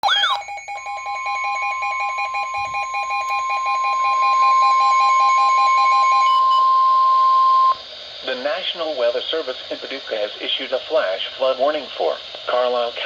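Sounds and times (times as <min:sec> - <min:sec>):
rapid low alarm beeps: 0:00.0 - 0:07.8
steady high alarm tone: 0:00.0 - 0:07.8.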